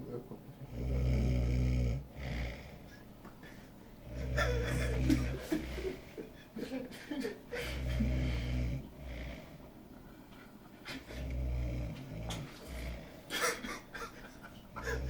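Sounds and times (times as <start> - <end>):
deep rumbling snoring: 0.6 - 3.0, 4.0 - 6.2, 7.6 - 9.7, 10.9 - 13.3, 14.7 - 15.0.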